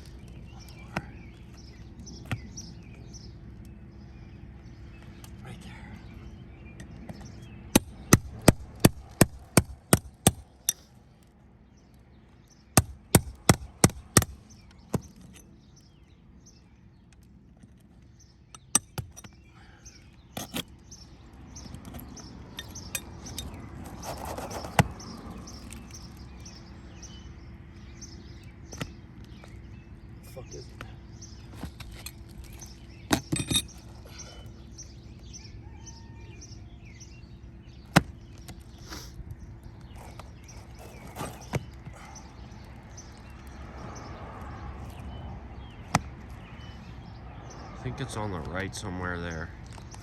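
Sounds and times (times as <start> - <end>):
hammer striking shingle roof: 7.7 - 10.8, 12.8 - 15.2.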